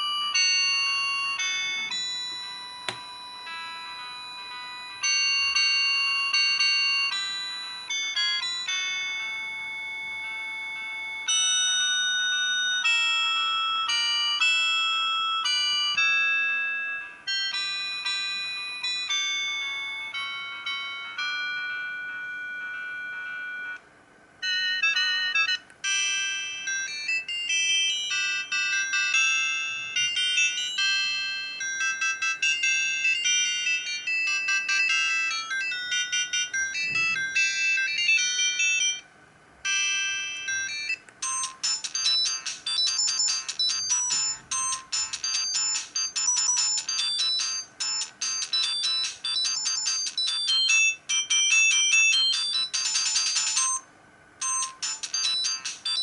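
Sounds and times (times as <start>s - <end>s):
electronic beeping ringtone melodies: 0.0s - 23.8s, 24.4s - 56.0s.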